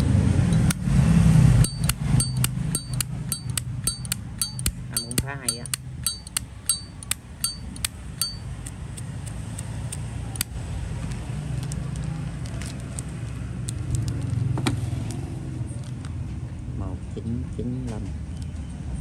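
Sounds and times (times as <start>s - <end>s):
lighter lid clicking open and shut: 1.6s - 7.9s.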